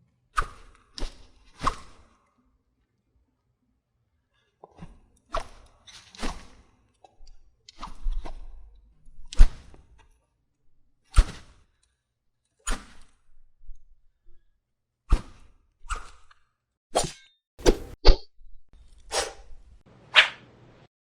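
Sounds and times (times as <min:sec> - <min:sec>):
sword swishes and slash hits: 0:17.0 - 0:18.2.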